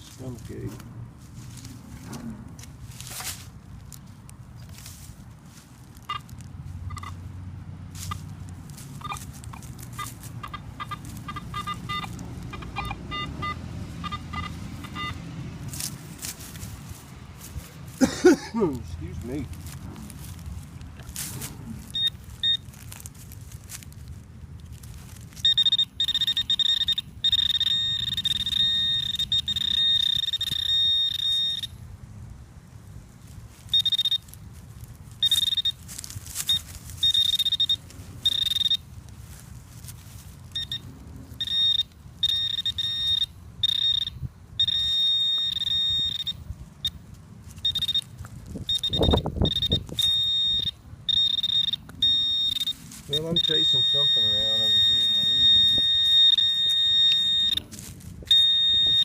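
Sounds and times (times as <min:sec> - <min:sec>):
rustling in leaves: 0:00.0 - 0:26.6, 0:31.6 - 0:44.6, 0:45.3 - 0:59.0
metal detector tone and beeps: 0:06.0 - 0:06.3, 0:06.9 - 0:07.2, 0:09.0 - 0:15.2, 0:21.9 - 0:22.7, 0:25.4 - 0:31.8, 0:33.7 - 0:34.3, 0:35.2 - 0:35.8, 0:36.4 - 0:38.9, 0:40.5 - 0:59.0.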